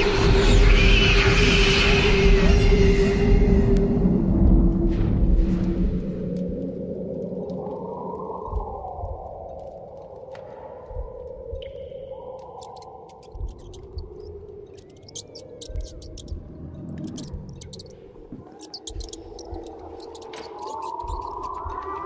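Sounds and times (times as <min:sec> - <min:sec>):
sharp crackling clicks: 0:12.4 - 0:21.8.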